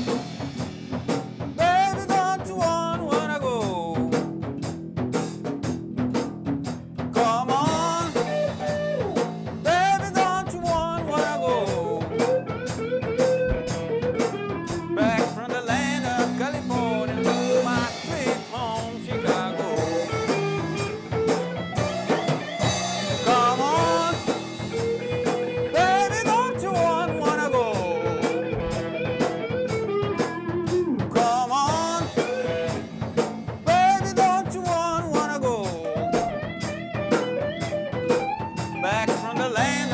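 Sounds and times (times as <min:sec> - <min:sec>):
bass: 0:00.0 - 0:39.9
drum kit beat: 0:00.0 - 0:39.9
electric guitar solo: 0:08.2 - 0:10.0, 0:10.8 - 0:15.5, 0:19.0 - 0:31.1, 0:35.8 - 0:39.9.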